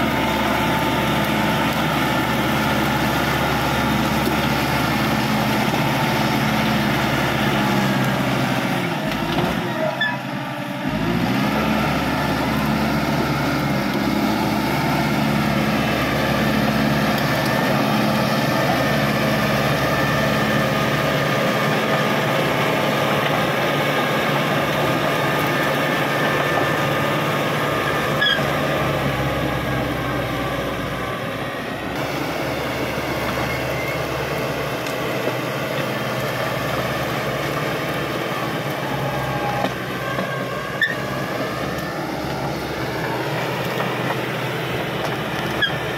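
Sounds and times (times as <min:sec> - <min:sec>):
bulldozer diesel engine running: 0:00.0 - 0:45.9.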